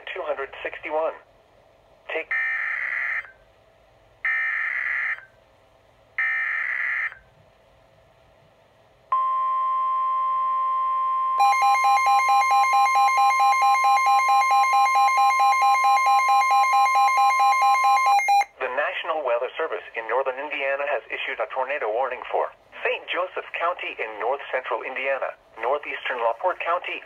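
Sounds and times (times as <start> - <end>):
steady warning alarm tone: 6.2 - 7.2, 9.1 - 18.5
weather radio alarm beeps: 9.1 - 18.5.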